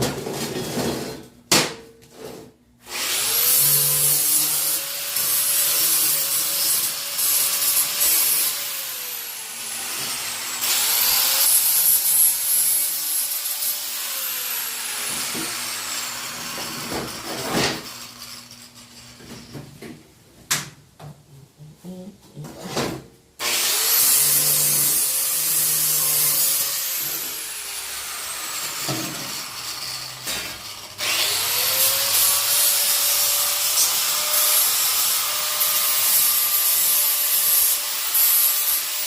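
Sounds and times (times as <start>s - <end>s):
angle grinder grinding steel: 2.9s - 19.3s, 23.4s - 39.0s.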